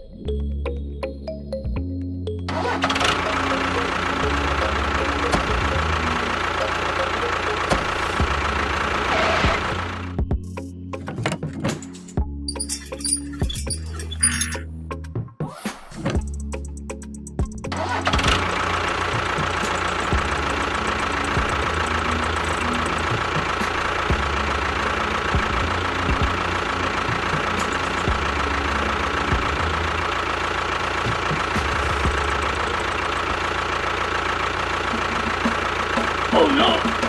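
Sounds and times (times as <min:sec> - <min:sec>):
small motor running: 0:02.5 - 0:10.1, 0:17.7 - 0:37.0.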